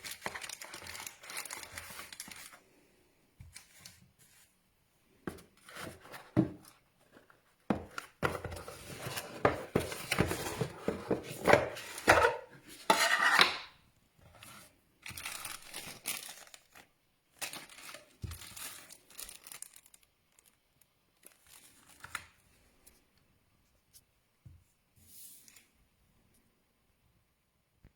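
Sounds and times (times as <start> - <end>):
plastic packaging crinkling: 0.0 - 2.7, 15.0 - 22.4.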